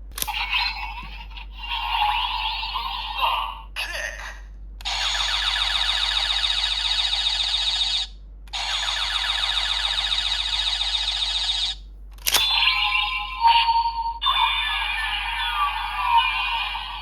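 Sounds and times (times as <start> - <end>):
warbling electronic alarm tone: 4.9 - 11.8, 12.4 - 17.0.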